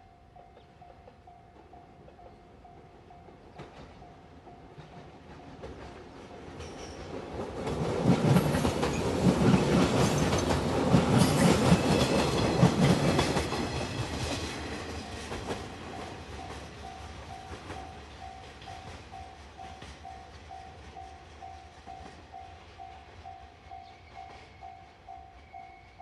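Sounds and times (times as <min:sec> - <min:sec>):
train wheels clattering over rail joints: 0:04.8 - 0:20.1.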